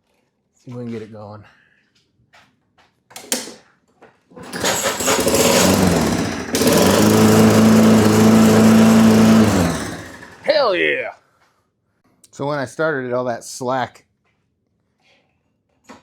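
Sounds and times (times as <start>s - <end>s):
lawn mower engine running: 4.4s - 10.6s.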